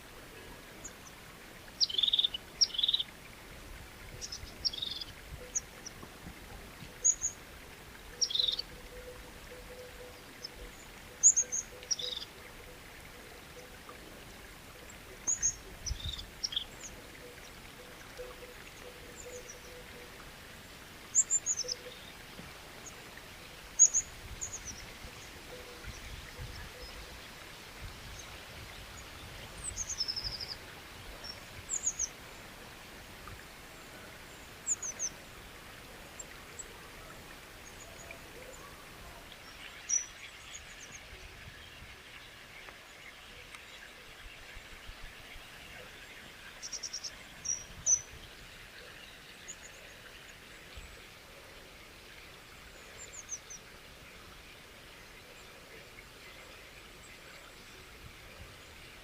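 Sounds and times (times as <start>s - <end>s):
flowing water hiss: 0.0s - 59.0s
birds chirping: 0.8s - 3.1s, 4.2s - 6.1s, 8.1s - 12.7s.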